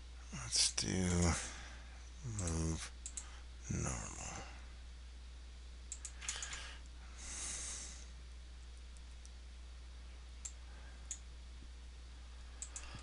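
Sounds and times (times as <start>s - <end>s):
low electrical hum: 0.0s - 13.0s
computer mouse clicks: 2.4s - 3.3s, 5.9s - 6.7s, 12.6s - 13.0s.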